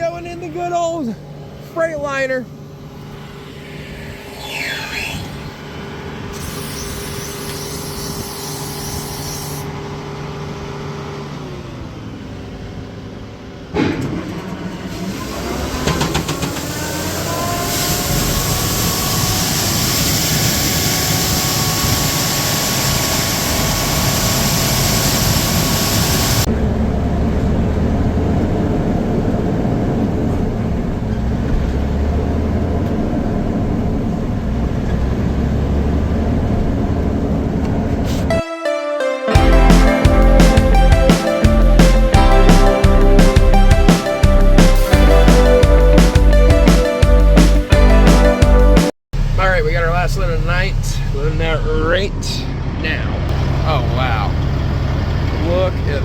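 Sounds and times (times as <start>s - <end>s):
diesel engine hum: 0.0s - 6.5s, 9.6s - 38.4s, 39.4s - 56.0s
low rumble: 2.4s - 6.3s
loud rushing noise: 2.5s - 6.7s, 39.3s - 48.9s
machine winding up whine: 2.5s - 10.2s, 15.0s - 26.5s.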